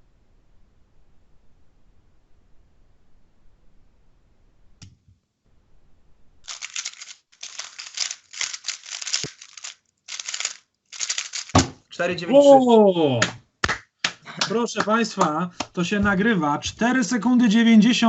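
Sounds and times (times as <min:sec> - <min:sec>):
speedcube plastic clacking: 0:06.5 - 0:11.7.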